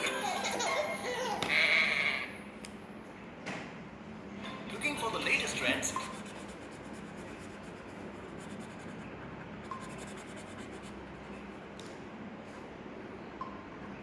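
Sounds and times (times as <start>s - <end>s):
pen scratching on paper: 5.4s - 11.6s.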